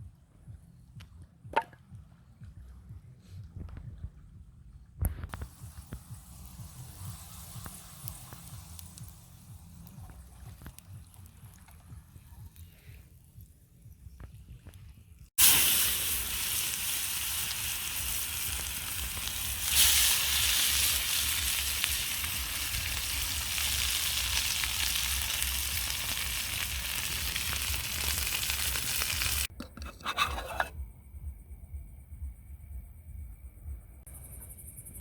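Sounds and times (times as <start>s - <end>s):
food sizzling in a pan: 5.4s - 9.4s, 15.4s - 29.5s.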